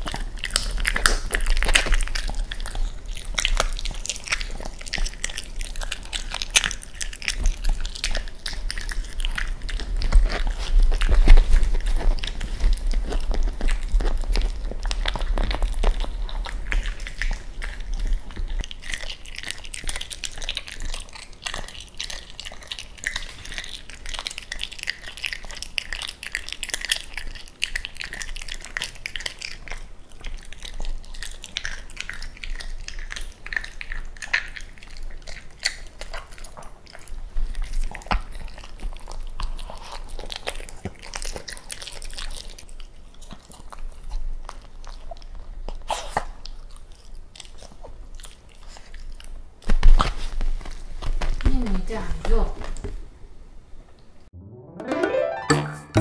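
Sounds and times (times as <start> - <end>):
dog chewing and crunching bone: 0.0 - 53.1.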